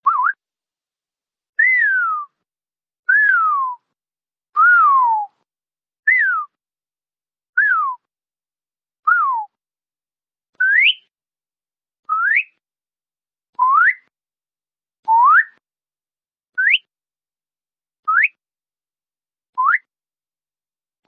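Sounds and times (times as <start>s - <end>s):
mouth whistling: 10.6s - 11.1s, 12.1s - 12.6s, 16.6s - 16.9s, 18.1s - 18.4s, 19.6s - 19.9s.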